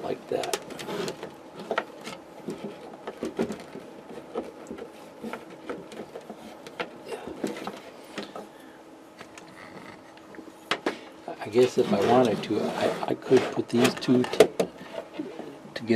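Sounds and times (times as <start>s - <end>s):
faint steady hum: 0.0s - 15.9s.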